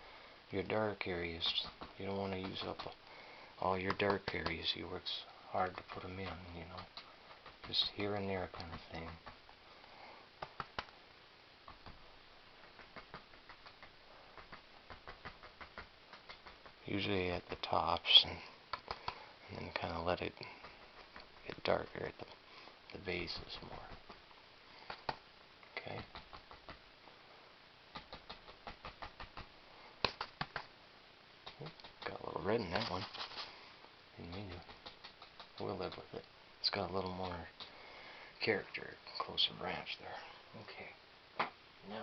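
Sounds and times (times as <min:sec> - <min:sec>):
brush tapping paint on canvas: 0:01.0 - 0:03.0, 0:03.8 - 0:04.7, 0:05.6 - 0:09.5, 0:11.6 - 0:22.3, 0:23.0 - 0:24.3, 0:25.8 - 0:26.9, 0:27.9 - 0:30.7, 0:34.2 - 0:36.2
paintbrush tapping on canvas: 0:12.6 - 0:16.8.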